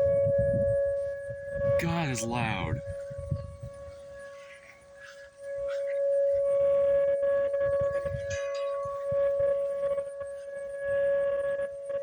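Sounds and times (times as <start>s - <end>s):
tornado warning siren steady tone: 0.0s - 12.0s.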